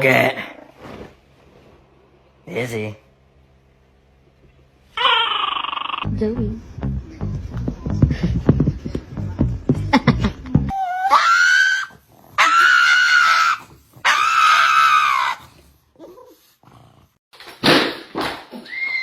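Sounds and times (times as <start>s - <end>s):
animal screaming: 5.0s - 6.1s, 10.7s - 15.5s.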